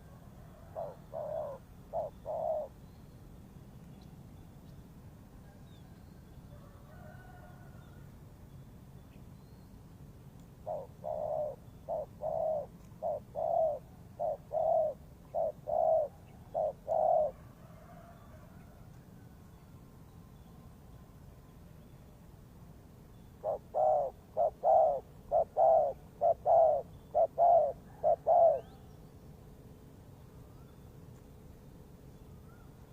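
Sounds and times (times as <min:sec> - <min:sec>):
dove cooing: 0:00.0 - 0:02.8, 0:10.6 - 0:18.2, 0:23.4 - 0:28.9
faint small bird chirps: 0:05.5 - 0:09.8.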